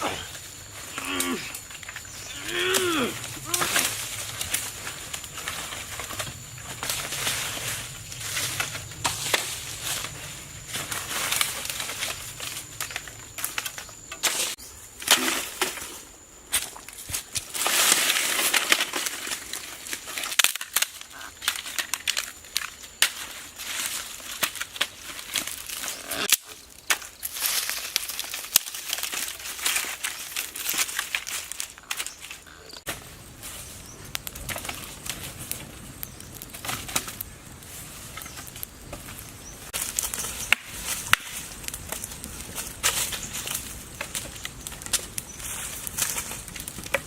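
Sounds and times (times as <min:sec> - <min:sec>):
rustling and crunching: 0:00.0 - 0:47.0
sharp clicks and crackles: 0:01.2 - 0:15.7, 0:16.5 - 0:32.8, 0:33.8 - 0:47.0.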